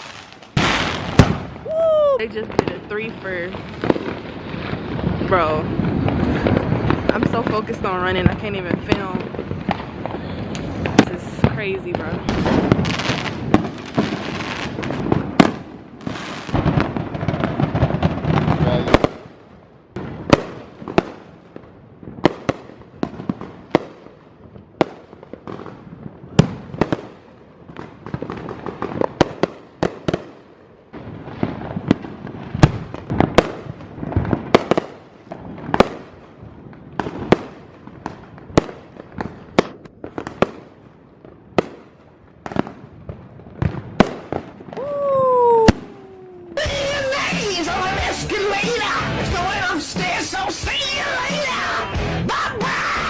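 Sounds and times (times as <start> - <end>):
falling firework whistle: 0.0 - 2.3, 44.7 - 49.0
firecrackers banging: 0.0 - 53.0
fireworks crackling: 0.0 - 53.0
music: 46.6 - 53.0.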